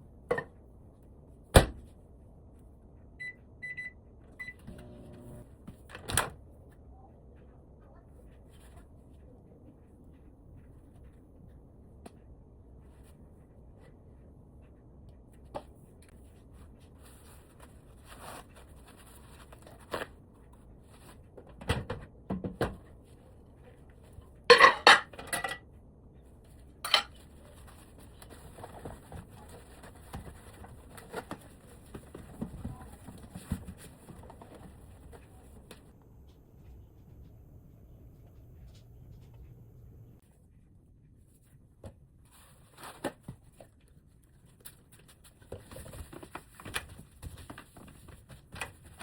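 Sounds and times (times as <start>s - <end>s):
kitchen items clattering: 24.4s - 25.6s, 26.8s - 35.6s.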